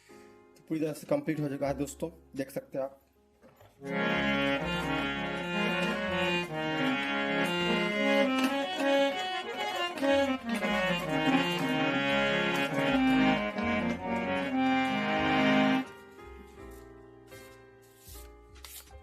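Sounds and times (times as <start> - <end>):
harmonium playing: 3.8 - 16.8.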